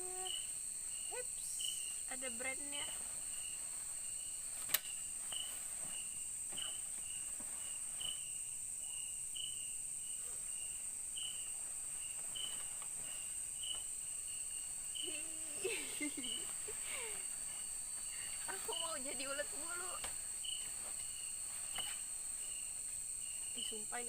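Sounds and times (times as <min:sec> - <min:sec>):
insect drone: 0:00.0 - 0:24.0
short insect chirp: 0:00.0 - 0:24.0
sharp click: 0:04.6 - 0:04.9.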